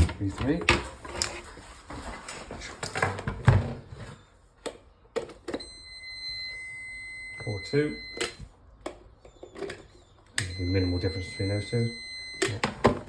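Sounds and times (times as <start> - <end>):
circuit tester steady beep: 5.6 - 8.5, 10.3 - 12.6.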